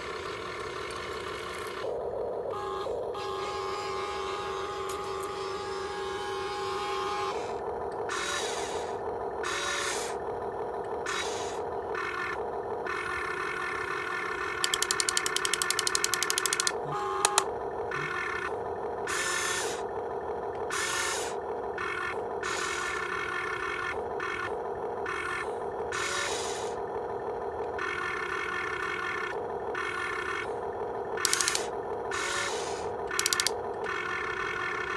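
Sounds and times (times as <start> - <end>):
small electric motors whining: 0.0 - 34.9
rapid clicking: 14.6 - 18.2, 31.2 - 33.9.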